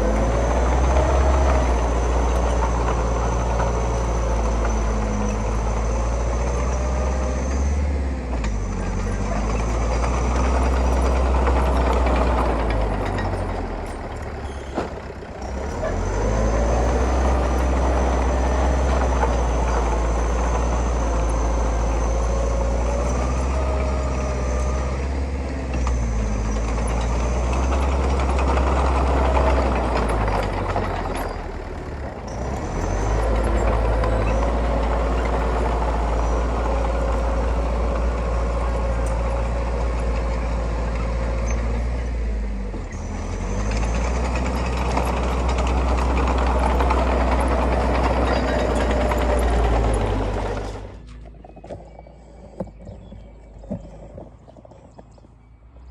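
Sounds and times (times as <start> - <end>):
heavy diesel engine rumbling: 0.0 - 55.9.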